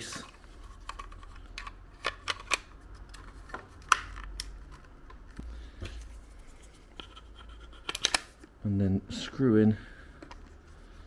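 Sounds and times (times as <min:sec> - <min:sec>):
plastic parts clicking together: 0:00.7 - 0:05.4, 0:07.8 - 0:08.3.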